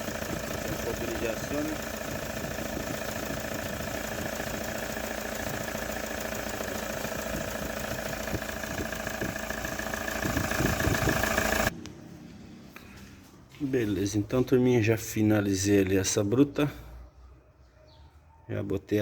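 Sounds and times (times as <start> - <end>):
diesel engine idling: 0.0 - 13.0.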